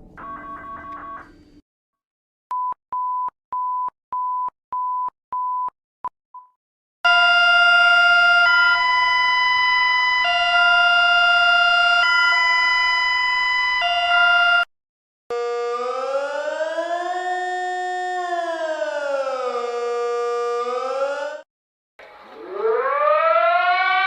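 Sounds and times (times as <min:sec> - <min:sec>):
two-chord alarm: 0:00.2 - 0:01.5, 0:07.1 - 0:14.7, 0:15.3 - 0:16.3.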